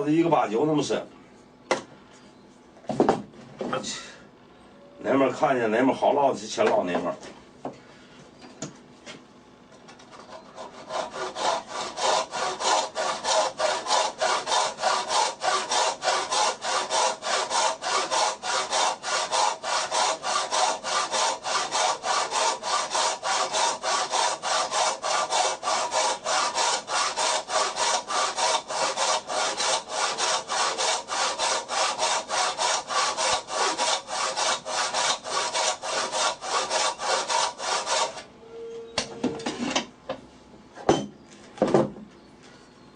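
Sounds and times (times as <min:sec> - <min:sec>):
hand saw cutting wood: 0:10.2 - 0:38.2.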